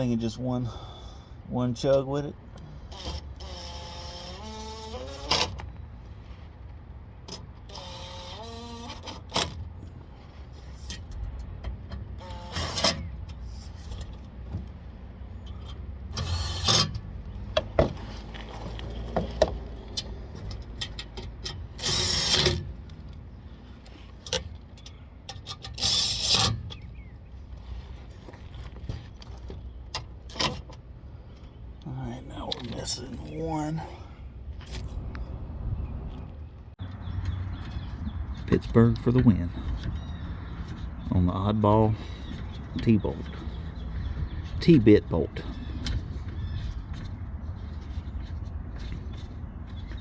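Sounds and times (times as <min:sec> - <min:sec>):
knocks and handling of parts: 0:10.9 - 0:14.8, 0:15.5 - 0:23.3.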